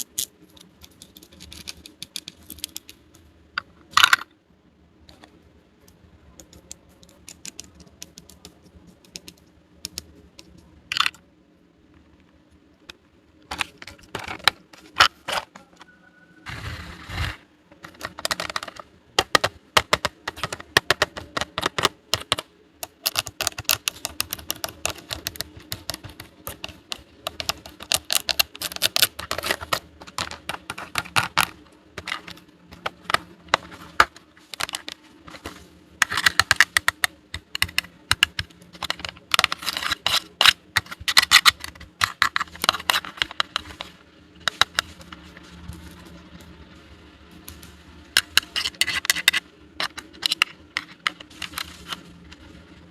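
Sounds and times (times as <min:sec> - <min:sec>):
plastic toy pieces clicking: 0:00.0 - 0:03.0, 0:06.4 - 0:11.2, 0:17.8 - 0:35.0, 0:36.0 - 0:44.8, 0:48.2 - 0:51.9.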